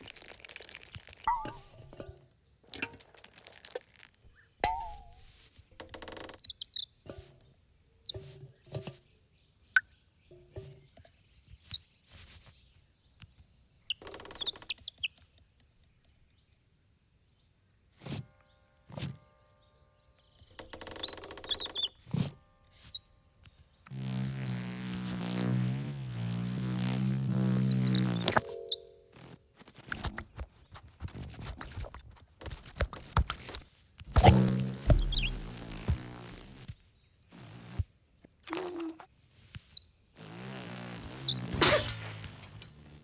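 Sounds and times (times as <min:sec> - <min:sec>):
small bird chirping: 0:00.0 - 0:17.6, 0:18.4 - 0:29.4, 0:32.6 - 0:37.8
wavering squeak: 0:01.3 - 0:01.7, 0:23.9 - 0:29.4, 0:32.9 - 0:36.7
soft low thumps: 0:34.1 - 0:36.7.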